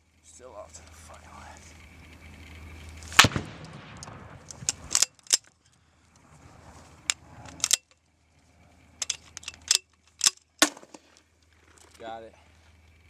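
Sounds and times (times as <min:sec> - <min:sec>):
rounds bursting: 0:01.7 - 0:06.2
grenade launcher firing: 0:03.1 - 0:05.1.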